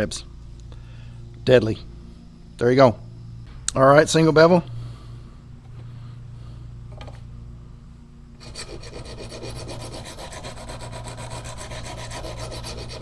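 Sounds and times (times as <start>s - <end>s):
hand file scraping steel blade: 8.4s - 13.0s.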